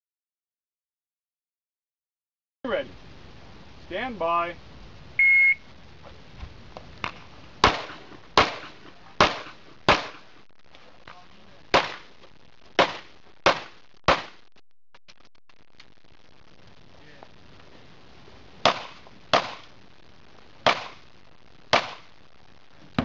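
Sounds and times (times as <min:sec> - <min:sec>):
pistol shots: 0:07.6 - 0:10.3, 0:11.7 - 0:12.1, 0:12.8 - 0:14.4, 0:18.6 - 0:19.7, 0:20.6 - 0:21.0, 0:21.7 - 0:22.1.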